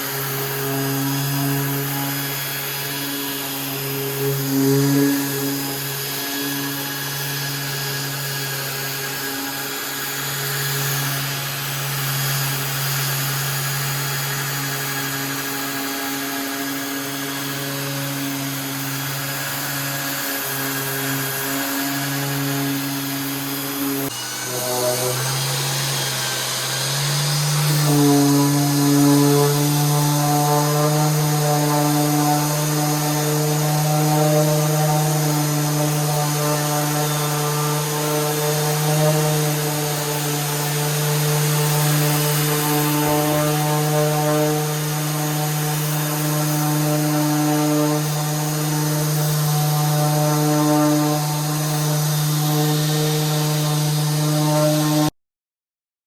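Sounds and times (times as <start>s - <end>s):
woodworking machine humming: 0.0s - 55.1s.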